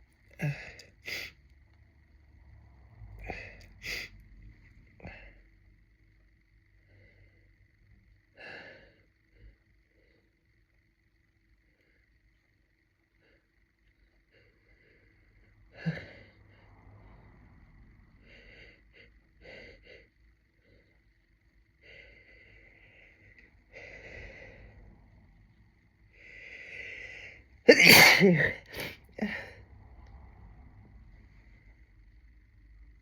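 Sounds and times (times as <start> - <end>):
woman sneezing: 27.7 - 29.4.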